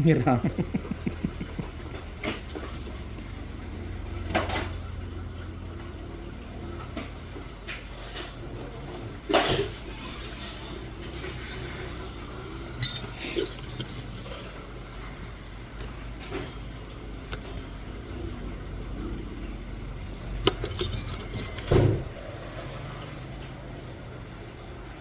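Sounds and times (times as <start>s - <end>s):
metal instruments clinking: 12.8s - 14.0s, 20.2s - 22.0s
low steady hum: 19.8s - 21.9s.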